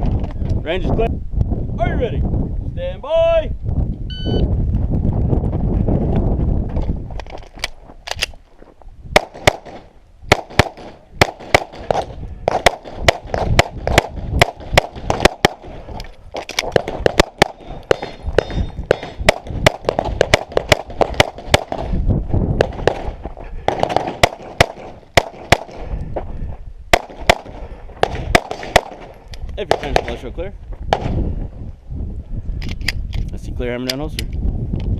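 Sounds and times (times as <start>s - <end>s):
pistol shots: 9.2s - 15.8s, 16.7s - 21.9s, 22.6s - 25.8s, 26.9s - 30.2s.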